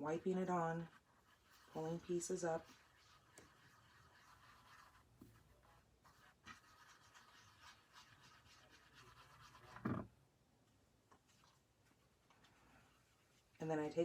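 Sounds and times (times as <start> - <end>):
rubbing on paper card: 0.0 - 10.0.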